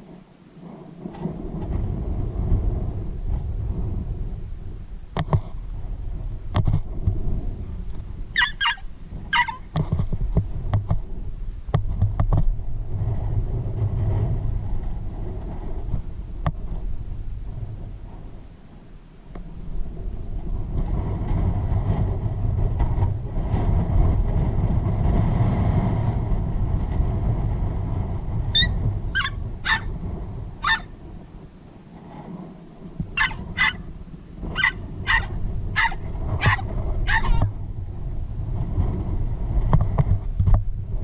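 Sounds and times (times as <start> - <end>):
low rumble: 1.1 - 18.6, 19.4 - 31.5, 32.4 - 41.0
small dog yapping: 8.4 - 9.7, 28.6 - 29.9, 30.6 - 30.9, 33.2 - 33.9, 34.5 - 37.5.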